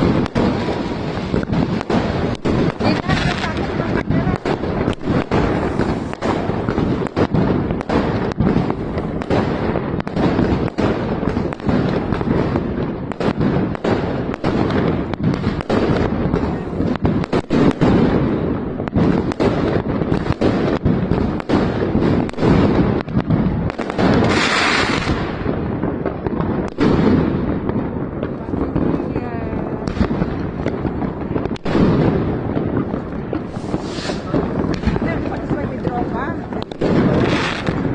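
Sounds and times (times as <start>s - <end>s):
constant rumble: 0.0s - 24.1s, 27.4s - 37.9s
fireworks exploding: 0.0s - 37.9s
hissing burst: 33.5s - 34.4s.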